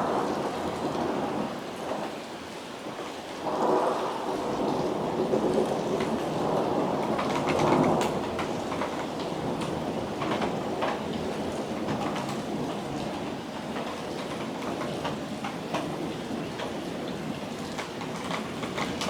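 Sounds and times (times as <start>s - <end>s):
thunder rumbling: 0.0s - 2.2s, 3.4s - 14.3s
steady rain: 0.0s - 19.0s.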